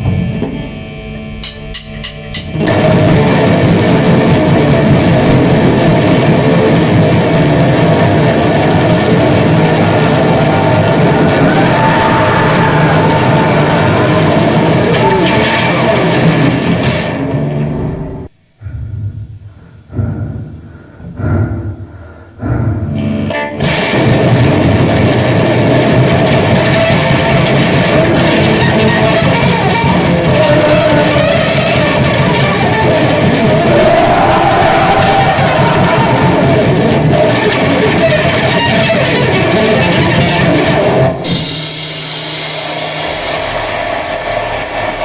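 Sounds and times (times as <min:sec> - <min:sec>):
distorted guitar band noise music: 0:00.0 - 0:18.7, 0:19.5 - 0:45.0.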